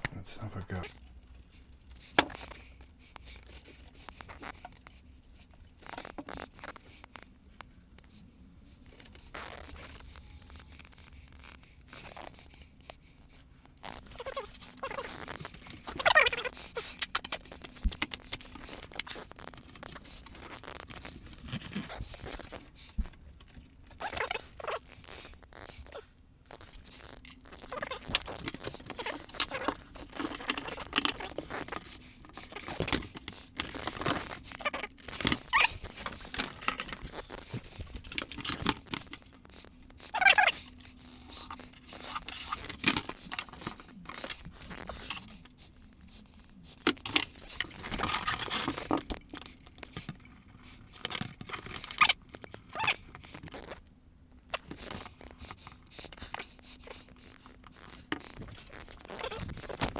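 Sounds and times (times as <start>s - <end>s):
cardboard and tape rustling: 13.8s - 52.2s, 54.6s - 59.9s.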